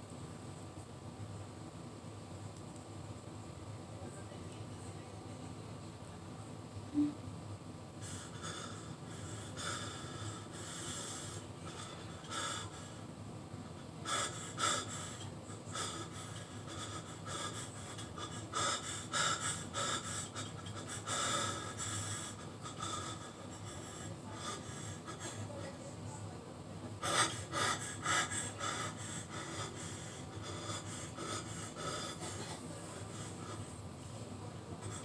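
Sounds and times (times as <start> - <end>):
person breathing hard: 8.0 - 13.1, 13.9 - 25.7, 27.0 - 34.2, 34.8 - 35.0.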